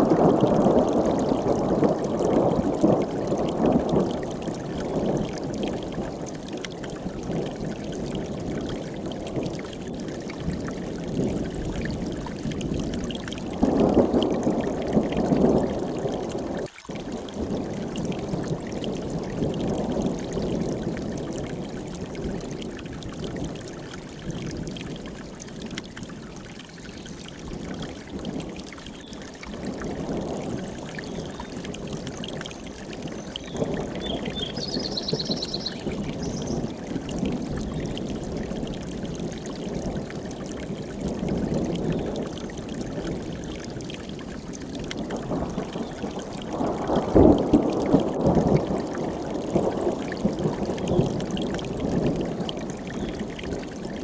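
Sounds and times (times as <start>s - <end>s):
stream rushing over rocks: 0.0s - 54.0s
high bird chirps: 33.4s - 36.6s.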